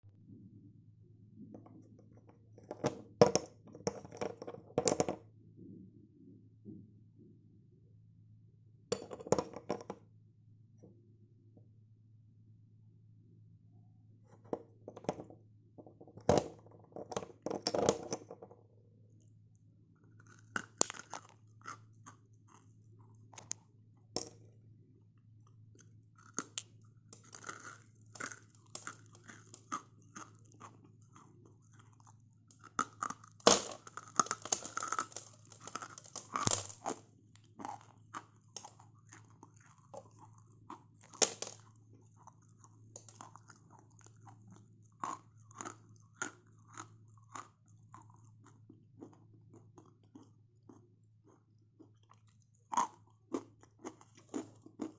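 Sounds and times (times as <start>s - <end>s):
clay being bitten and chewed: 20.0s - 24.6s, 25.5s - 54.9s.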